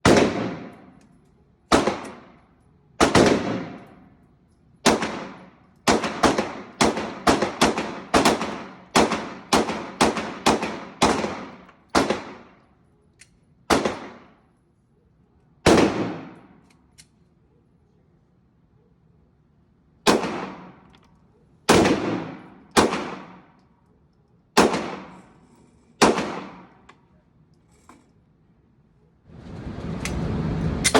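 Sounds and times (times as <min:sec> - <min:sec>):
gunshots with ringing tail: 0:00.0 - 0:01.0, 0:01.7 - 0:02.4, 0:03.0 - 0:04.1, 0:04.8 - 0:12.6, 0:13.7 - 0:14.4, 0:15.6 - 0:16.6, 0:20.0 - 0:20.9, 0:21.7 - 0:23.5, 0:24.6 - 0:25.4, 0:26.0 - 0:26.8.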